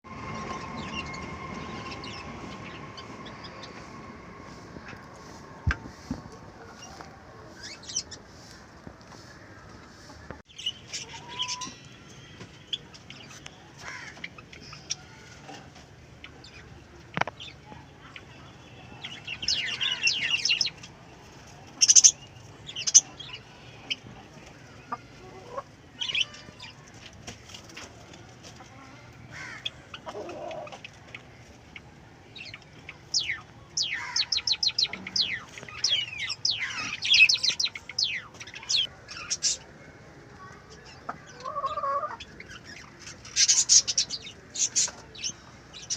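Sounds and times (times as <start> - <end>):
chickens clucking and calling: 0.1 - 11.8, 22.8 - 39.7, 40.6 - 45.5.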